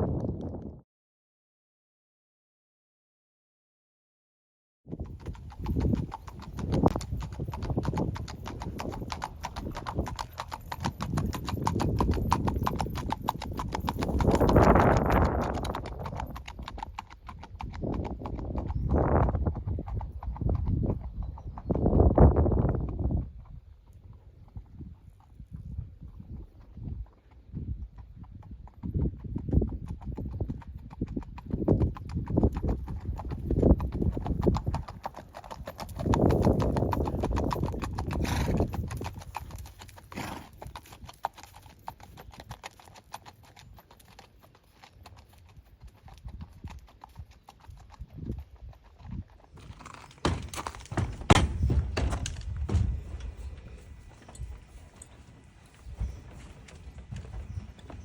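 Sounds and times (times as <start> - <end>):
horses' hoofbeats: 5.0 - 58.0.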